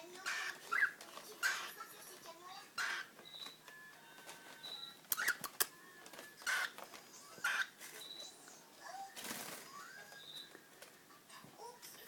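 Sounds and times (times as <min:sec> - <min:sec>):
cockatiels chirping: 0:00.0 - 0:03.6, 0:04.6 - 0:05.5, 0:06.4 - 0:08.4, 0:09.5 - 0:10.6.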